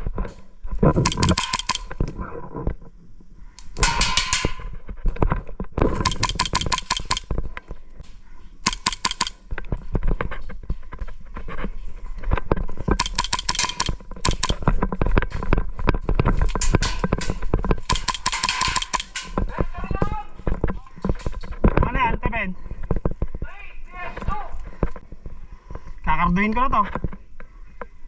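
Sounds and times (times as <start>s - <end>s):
airsoft guns rapid fire: 1.0s - 1.9s, 5.9s - 7.3s, 8.6s - 9.4s, 13.0s - 14.6s, 17.8s - 19.3s
gun clicks: 1.0s - 2.0s, 5.9s - 7.4s, 8.6s - 9.4s, 12.9s - 14.6s, 17.8s - 19.4s.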